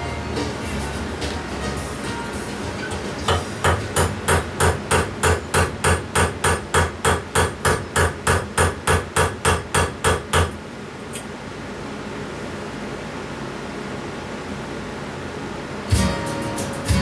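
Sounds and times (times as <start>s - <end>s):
hammer striking metal: 2.8s - 10.6s.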